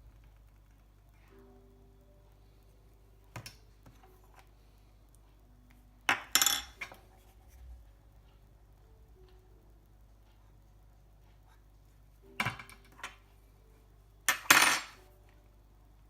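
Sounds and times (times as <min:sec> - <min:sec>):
spoon and crockery clinking: 0:06.1 - 0:07.0, 0:14.3 - 0:15.0.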